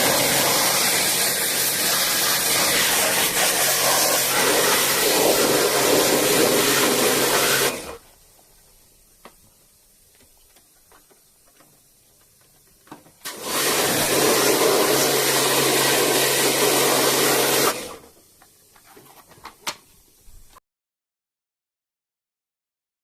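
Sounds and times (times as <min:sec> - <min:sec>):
pressure washer spraying water: 0:00.0 - 0:08.0, 0:13.2 - 0:18.0.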